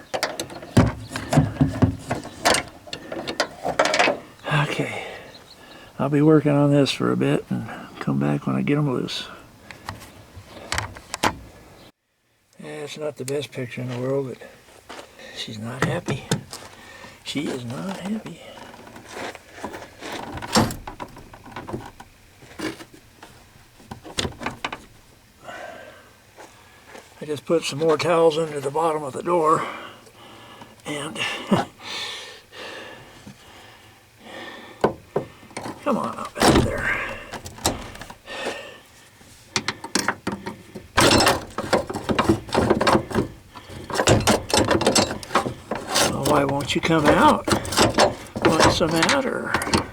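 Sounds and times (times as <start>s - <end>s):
wrench knocking and clanking: 0.0s - 4.2s, 34.8s - 38.2s, 39.6s - 49.9s.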